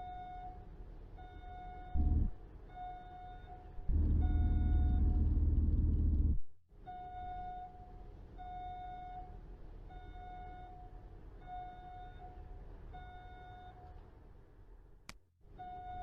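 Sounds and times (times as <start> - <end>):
reversing alarm beeps: 0.0 - 5.3, 6.9 - 13.9, 15.6 - 16.0
low engine rumble: 1.9 - 2.6, 3.8 - 6.5.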